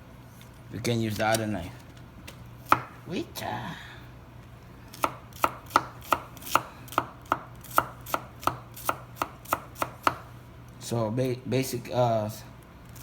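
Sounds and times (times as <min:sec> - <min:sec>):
knife chopping on cutting board: 0:02.6 - 0:03.0, 0:05.0 - 0:10.3.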